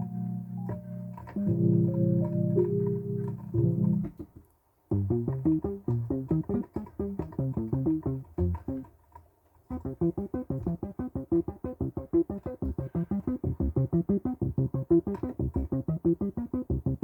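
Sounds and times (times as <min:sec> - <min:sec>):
short plucky synth notes: 0:09.8 - 0:17.0
synth chord: 0:09.8 - 0:17.0.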